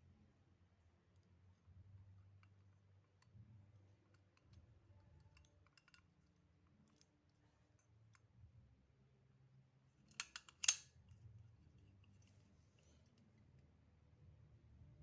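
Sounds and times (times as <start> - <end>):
metal revolver clicks: 10.1 - 11.0.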